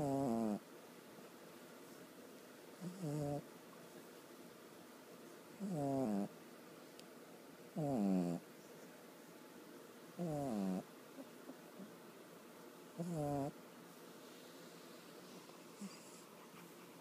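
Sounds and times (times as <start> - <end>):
dog snoring: 0.0 - 0.6, 2.8 - 3.5, 5.6 - 6.3, 7.8 - 8.4, 10.2 - 10.9, 13.0 - 13.6, 15.7 - 16.3.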